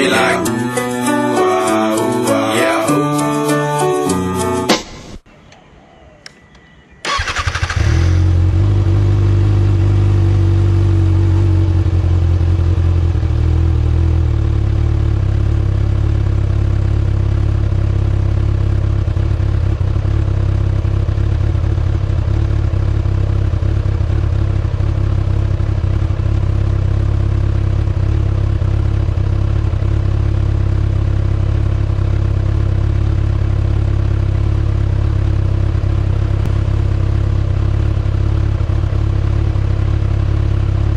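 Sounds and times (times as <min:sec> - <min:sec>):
motorcycle starter whine: 0:06.5 - 0:09.0
motorcycle engine idling: 0:07.1 - 0:40.9.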